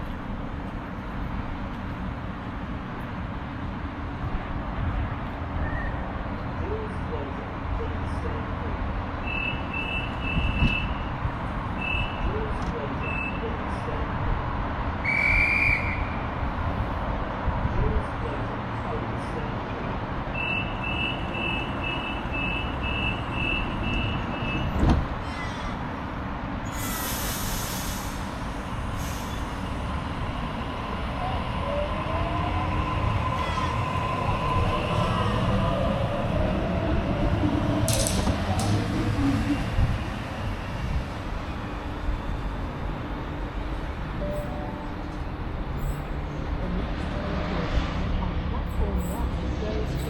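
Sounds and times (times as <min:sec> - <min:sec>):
train hum: 0:00.0 - 0:50.0
train doors thudding shut: 0:24.6 - 0:25.2, 0:37.8 - 0:39.0
short high hisses: 0:26.7 - 0:28.4.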